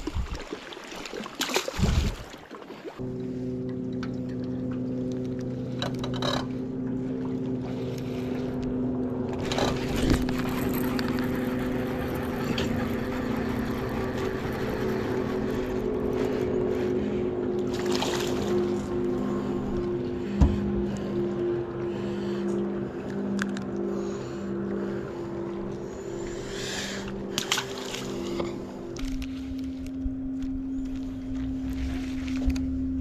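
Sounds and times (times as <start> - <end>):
rushing water: 0.0 - 3.0
outboard motor running: 2.9 - 33.0.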